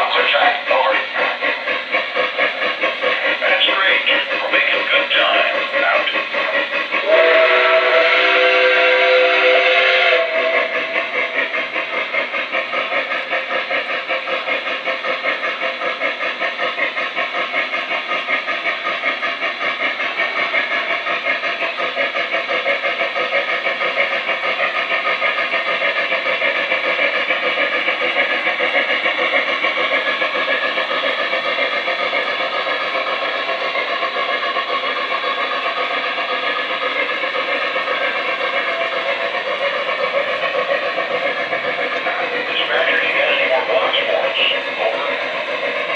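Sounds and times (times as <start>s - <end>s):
steam locomotive chuffing: 0.0s - 45.9s
steam whistle: 7.0s - 11.0s.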